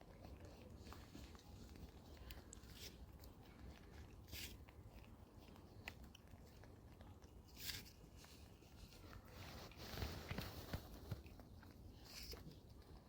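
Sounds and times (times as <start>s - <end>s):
monkeys chewing food: 0.0s - 13.0s
short rustling bursts: 7.6s - 11.3s.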